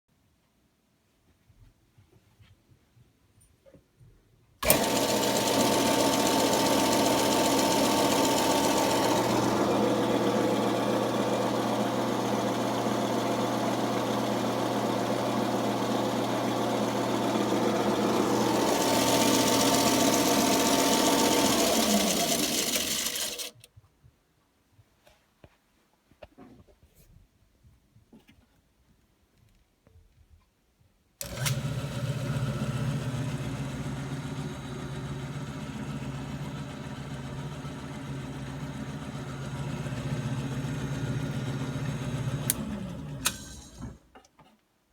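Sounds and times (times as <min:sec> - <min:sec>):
machine humming and whirring: 0:04.6 - 0:23.6, 0:31.2 - 0:44.0.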